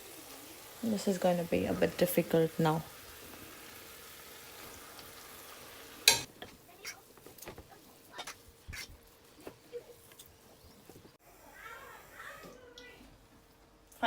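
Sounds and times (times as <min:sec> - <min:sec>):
food sizzling in frying pan: 0:00.0 - 0:11.2.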